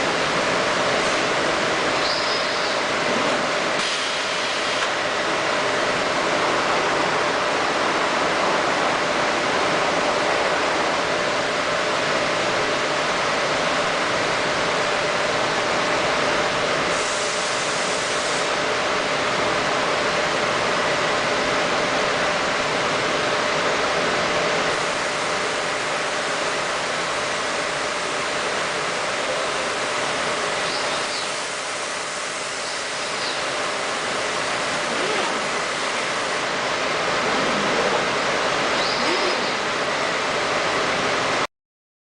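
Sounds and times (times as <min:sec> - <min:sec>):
machinery hiss: 0:03.7 - 0:05.2, 0:16.9 - 0:18.6, 0:24.7 - 0:40.0.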